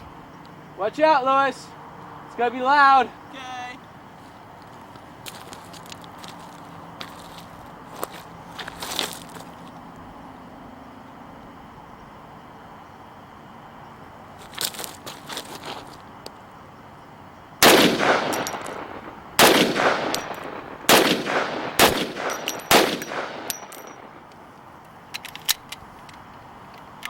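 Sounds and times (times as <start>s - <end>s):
gunshots with echo: 17.6s - 24.3s.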